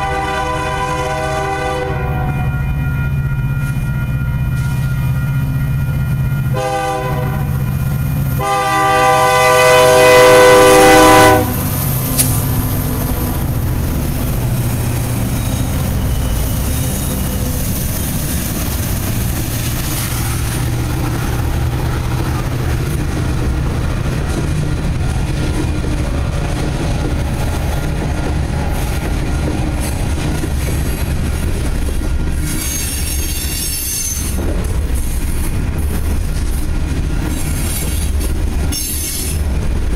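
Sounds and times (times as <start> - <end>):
locomotive horn blasts: 0.0 - 2.9, 6.5 - 7.7, 8.4 - 11.8
passing train rumble: 0.0 - 39.9
high squeal: 2.3 - 6.6, 14.5 - 20.6, 32.4 - 34.4.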